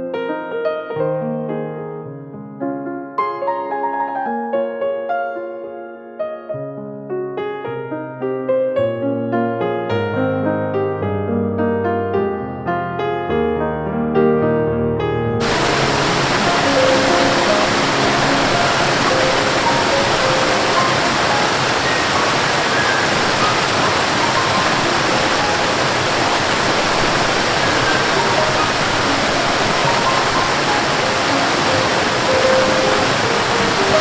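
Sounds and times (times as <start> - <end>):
waterfall rushing: 15.4 - 34.0.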